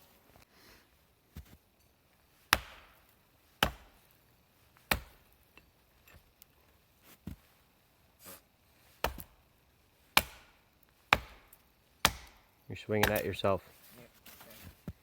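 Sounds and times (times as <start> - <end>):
axe chopping wood: 2.5 - 3.0, 3.6 - 4.0, 4.9 - 5.2, 9.0 - 9.4, 10.2 - 13.4.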